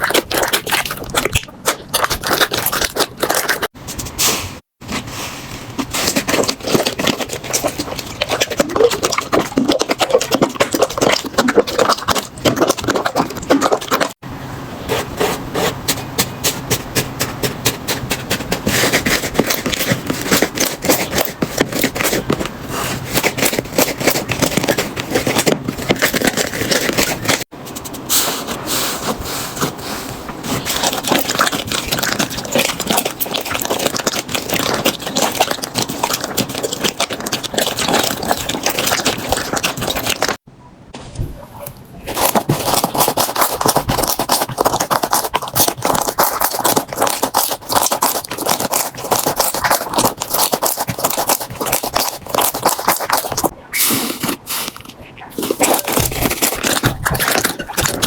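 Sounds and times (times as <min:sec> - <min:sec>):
slime crackling and popping: 0:42.1 - 0:53.5.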